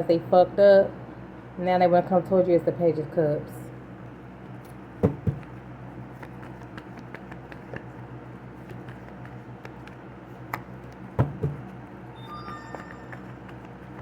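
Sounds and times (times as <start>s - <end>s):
steady low hum: 0.0s - 14.0s
louder knocks: 5.0s - 5.4s, 11.2s - 11.7s.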